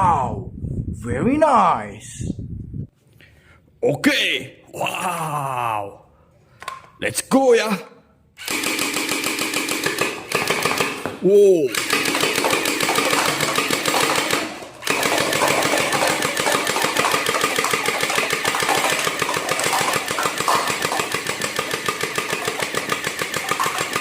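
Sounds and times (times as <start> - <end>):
toy gun rattling on full auto: 8.4 - 24.0.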